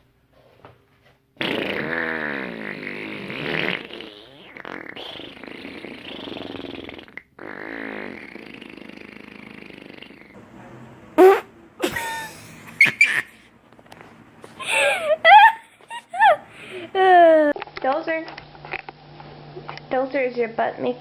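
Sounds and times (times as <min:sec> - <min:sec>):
wobbling buzzy fart noise: 0:01.4 - 0:10.4, 0:11.2 - 0:11.5.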